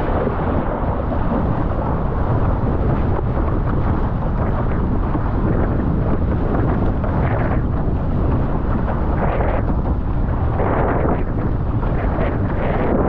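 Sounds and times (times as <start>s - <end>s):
water rushing around board: 0.0s - 13.0s
wind buffeting microphone: 0.0s - 13.0s.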